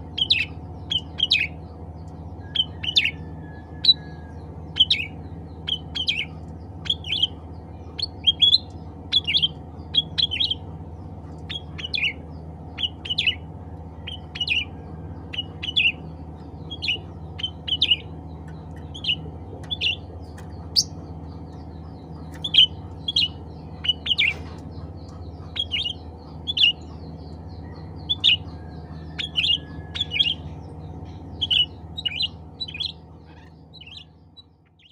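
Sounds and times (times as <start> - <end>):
steady low hum: 0.0 - 34.9.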